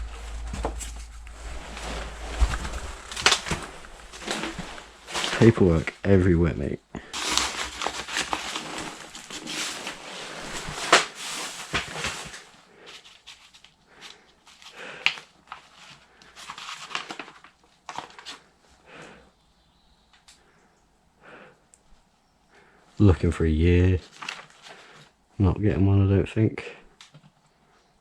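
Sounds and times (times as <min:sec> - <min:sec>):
papers rustling and crinkling: 0:00.0 - 0:05.9, 0:07.0 - 0:19.2, 0:24.0 - 0:25.2.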